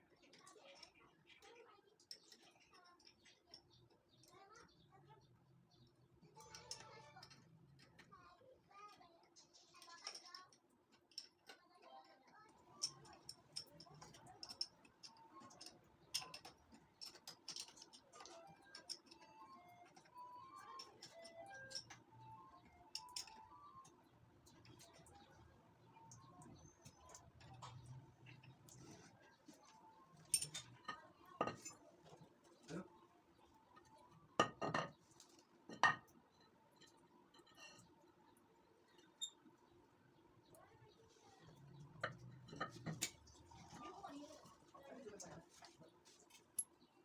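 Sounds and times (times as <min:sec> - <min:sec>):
metal tools clinking on bench: 0:12.7 - 0:23.5, 0:29.7 - 0:31.9, 0:33.8 - 0:35.0.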